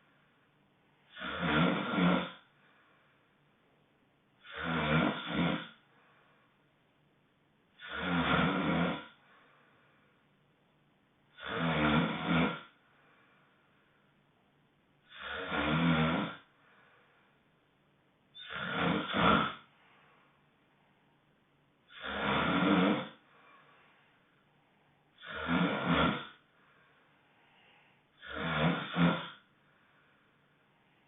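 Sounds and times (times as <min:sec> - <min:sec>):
honking snores: 0:01.1 - 0:02.5, 0:04.4 - 0:05.9, 0:07.8 - 0:09.2, 0:11.3 - 0:12.8, 0:15.0 - 0:16.5, 0:18.3 - 0:19.7, 0:21.9 - 0:23.3, 0:25.2 - 0:26.5, 0:28.2 - 0:29.5.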